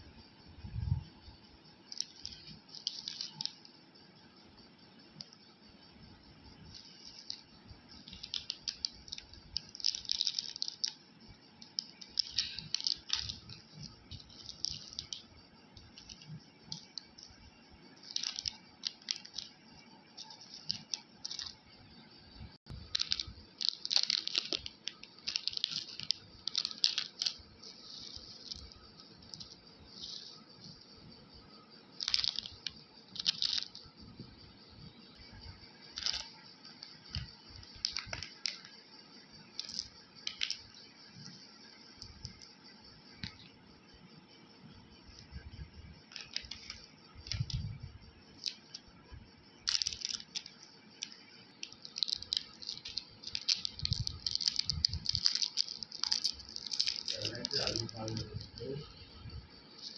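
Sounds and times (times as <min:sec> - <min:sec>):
sweets rattling: 0:01.6 - 0:43.6, 0:44.9 - 0:59.9
plastic wrapper crinkling: 0:01.9 - 0:03.7, 0:06.6 - 0:21.6, 0:22.7 - 0:30.8, 0:32.0 - 0:33.9, 0:35.8 - 0:38.8, 0:39.4 - 0:41.4, 0:46.1 - 0:48.9, 0:49.6 - 0:59.9.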